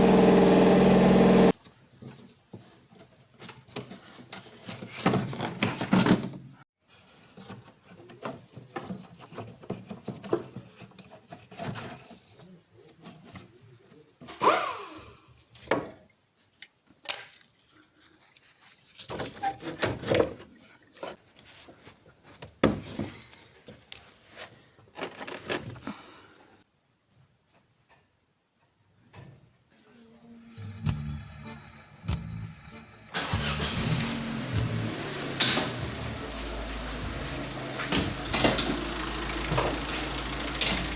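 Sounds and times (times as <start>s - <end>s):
tools and parts knocking and rattling: 7.4s - 12.4s, 36.9s - 40.9s.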